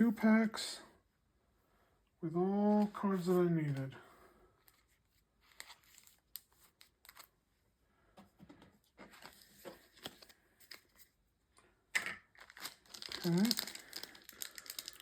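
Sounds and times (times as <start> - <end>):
rustling of cards and wrapper: 2.7 - 4.0, 4.6 - 7.4, 8.9 - 11.2, 12.0 - 15.0.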